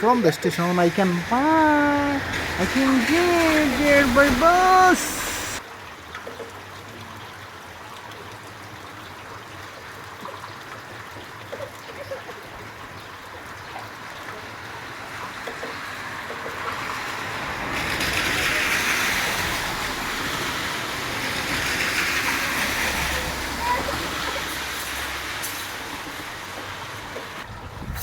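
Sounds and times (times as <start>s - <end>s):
steady rain hiss: 0.0s - 5.7s, 14.2s - 27.5s.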